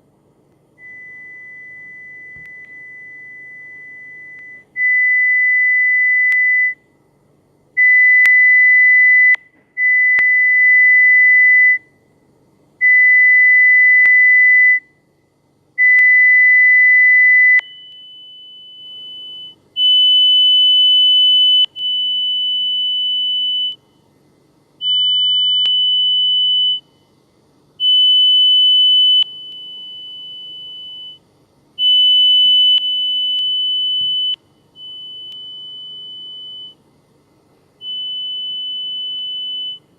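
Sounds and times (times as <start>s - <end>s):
pure test tone beeps: 0.8s - 6.8s, 31.8s - 36.8s, 37.8s - 39.9s.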